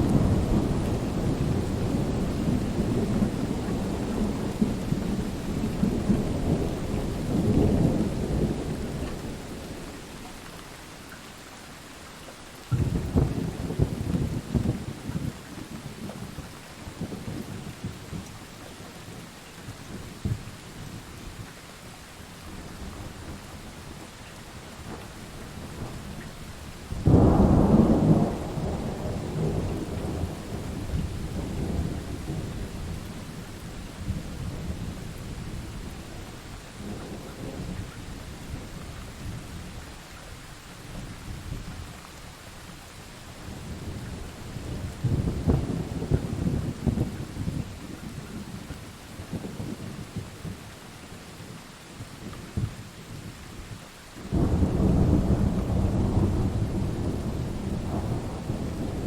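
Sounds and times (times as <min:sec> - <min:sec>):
low rolling thunder: 0:00.0 - 0:10.1, 0:12.7 - 0:18.4, 0:22.5 - 0:40.0, 0:43.4 - 0:50.8, 0:52.1 - 0:59.0
steady rain: 0:00.0 - 0:59.0
loud thunderclap: 0:12.7 - 0:15.3, 0:26.9 - 0:33.1, 0:43.7 - 0:47.7, 0:54.2 - 0:59.0.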